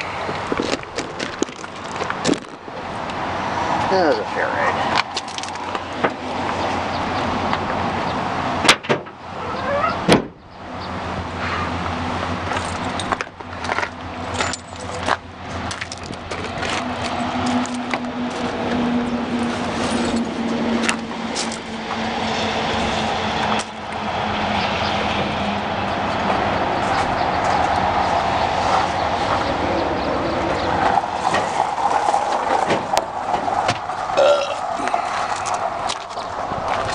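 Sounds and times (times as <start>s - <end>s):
bike rattles and clicks: 0.0s - 3.2s, 4.9s - 7.6s, 12.4s - 18.9s, 25.9s - 36.9s
wind rush: 15.5s - 36.9s.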